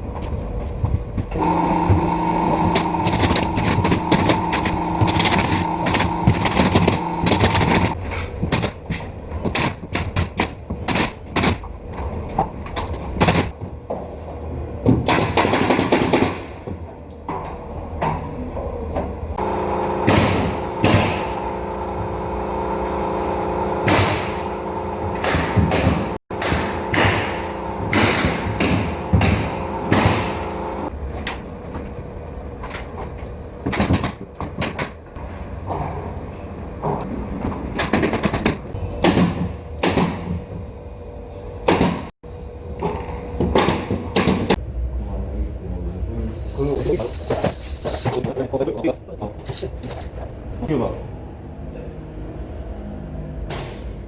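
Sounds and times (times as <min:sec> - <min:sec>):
steady machine hum: 0:01.4 - 0:08.0, 0:19.4 - 0:31.0
pneumatic nail gun shots: 0:01.4 - 0:08.8, 0:09.4 - 0:11.6, 0:13.2 - 0:13.5, 0:15.0 - 0:16.6, 0:19.4 - 0:21.9, 0:23.1 - 0:30.9, 0:33.7 - 0:34.9, 0:37.8 - 0:40.4, 0:41.7 - 0:42.1, 0:43.5 - 0:44.6.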